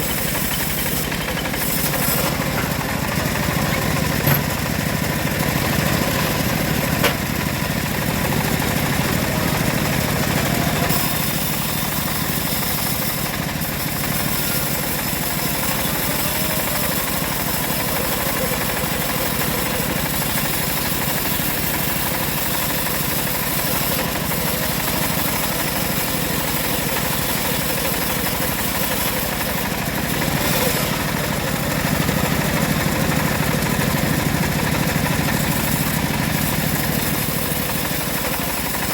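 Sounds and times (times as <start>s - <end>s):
bandsaw hissing through wood: 0.0s - 38.9s
engine drone: 0.0s - 38.9s.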